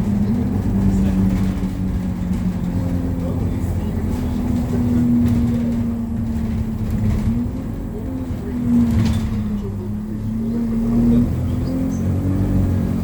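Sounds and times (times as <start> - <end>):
bus engine drone with whine: 0.0 - 13.0.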